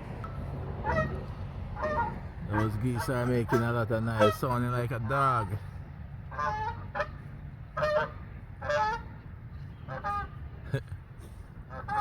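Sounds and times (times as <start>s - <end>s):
geese honking: 0.8s - 5.5s, 6.3s - 7.2s, 7.8s - 9.2s, 9.8s - 10.4s, 11.7s - 12.0s.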